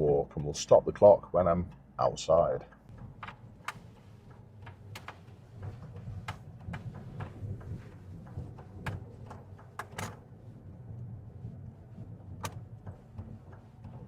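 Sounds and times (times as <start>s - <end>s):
car engine and road rumble: 0.0s - 14.0s
sharp clicks and knocks: 2.7s - 11.1s, 12.0s - 14.0s.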